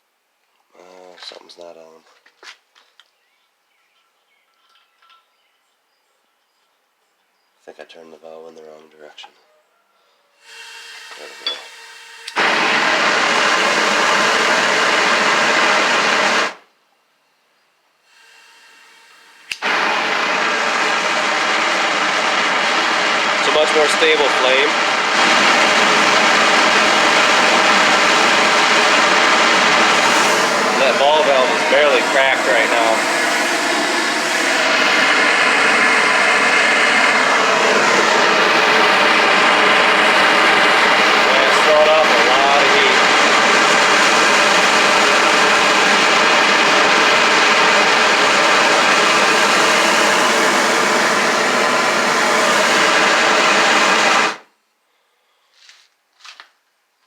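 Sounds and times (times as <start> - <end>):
forge burner flame hissing: 10.4 - 16.6, 18.1 - 54.5.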